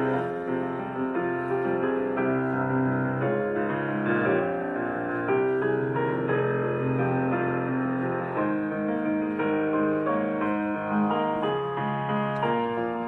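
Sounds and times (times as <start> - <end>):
slow gentle piano music: 0.0 - 13.0.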